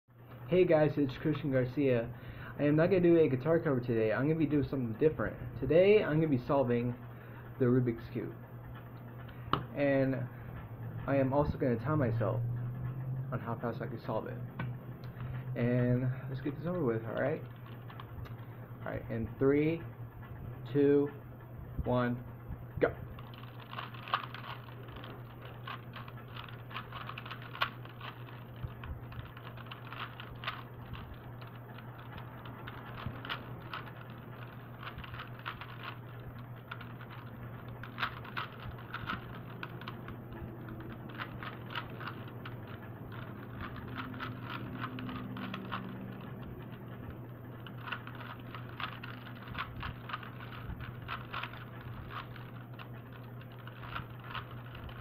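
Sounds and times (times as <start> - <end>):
steady low hum: 0.1 - 55.0
plastic cube layers clicking: 23.2 - 55.0.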